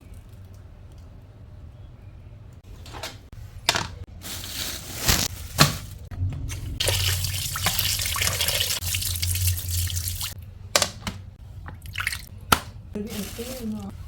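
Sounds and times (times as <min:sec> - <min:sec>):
kitchen knocks and clatters: 0:02.8 - 0:04.1, 0:10.7 - 0:11.8.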